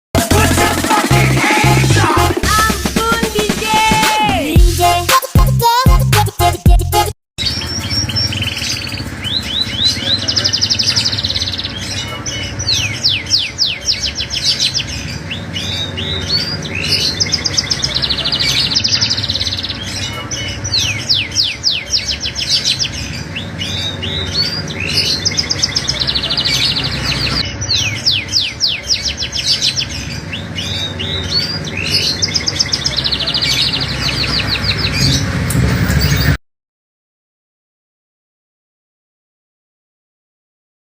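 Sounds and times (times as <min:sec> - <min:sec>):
songbird twittering: 0:07.4 - 0:36.4.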